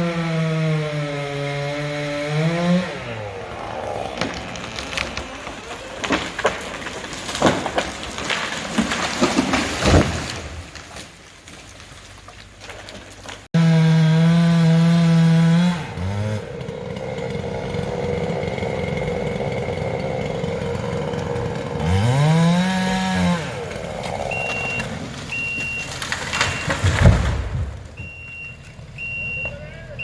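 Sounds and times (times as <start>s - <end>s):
engine drone: 0.0s - 7.8s, 13.6s - 27.0s
chainsaw revving and idling: 0.0s - 9.6s, 13.6s - 27.0s
reversing alarm beeping: 23.9s - 26.8s, 28.0s - 30.0s.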